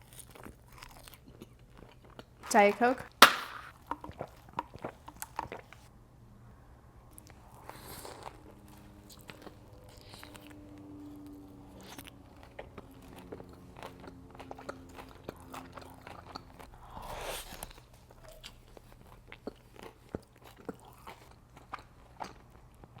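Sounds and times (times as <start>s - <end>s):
chewing crunches: 0.0s - 5.9s, 7.1s - 23.0s
faint steady hum: 0.0s - 23.0s
wet mouth clicks: 13.5s - 20.2s.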